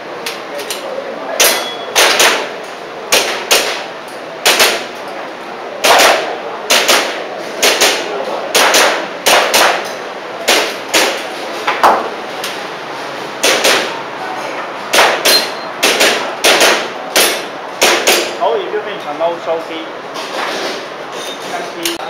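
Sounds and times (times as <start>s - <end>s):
airsoft pistol shots: 1.4s - 2.5s, 3.1s - 3.8s, 4.4s - 4.9s, 5.8s - 9.9s, 10.5s - 11.2s, 13.4s - 13.9s, 14.9s - 18.3s.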